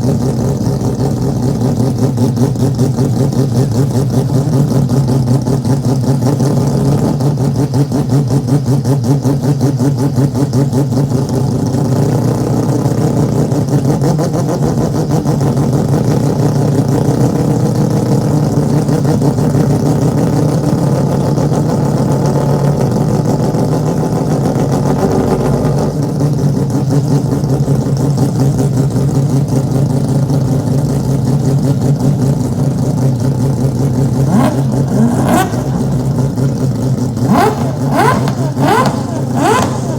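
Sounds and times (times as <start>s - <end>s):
rotary engine running: 0.2s - 39.9s.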